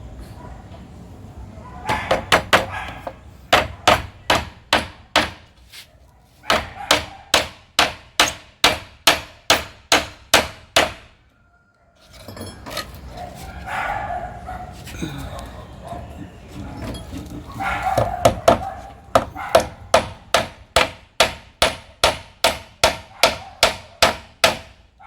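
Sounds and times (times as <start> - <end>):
hammer driving nails: 6.5 - 11.1, 19.2 - 24.8.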